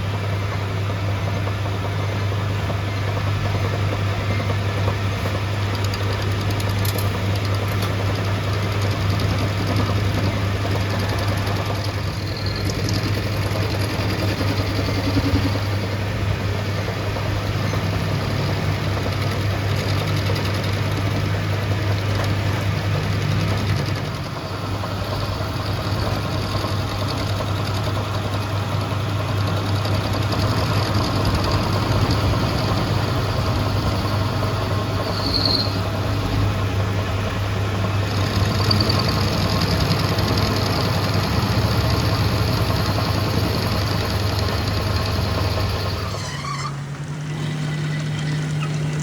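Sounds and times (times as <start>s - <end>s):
engine low hum: 0.0s - 49.0s
brief high squeak: 12.2s - 12.8s, 35.0s - 35.8s, 46.0s - 49.0s.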